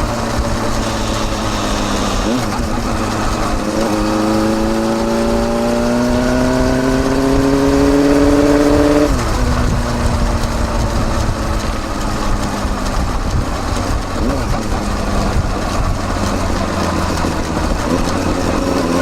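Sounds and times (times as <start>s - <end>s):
motorcycle exhaust revving: 0.0s - 19.0s.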